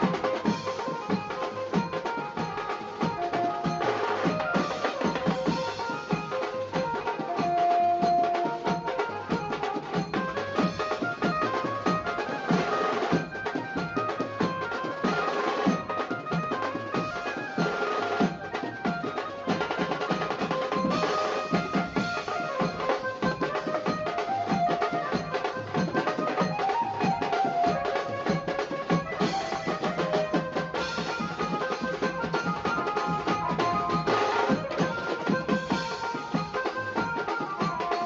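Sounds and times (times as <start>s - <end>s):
music with fast drumming: 0.0s - 38.0s.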